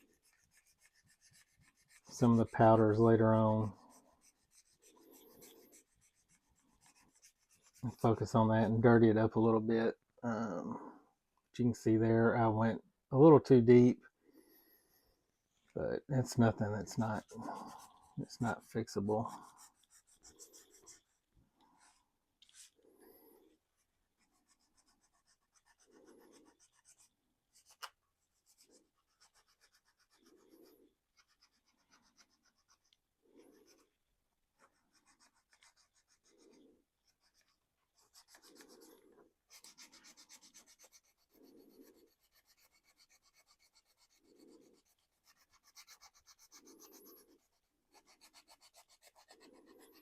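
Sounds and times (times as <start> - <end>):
rubbing on plastic: 0.0 - 8.4, 34.5 - 50.0.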